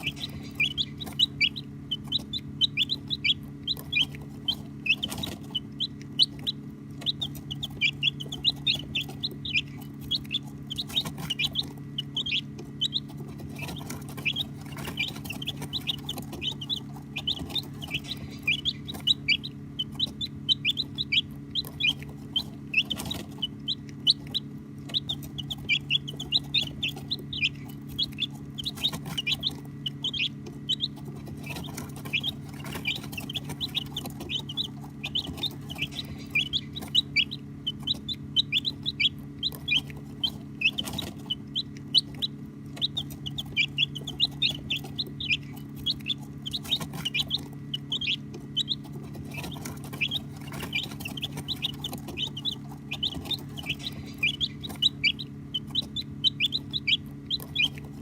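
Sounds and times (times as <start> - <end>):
baby chicks peeping: 0.0 - 58.0
steady low hum: 0.0 - 58.0.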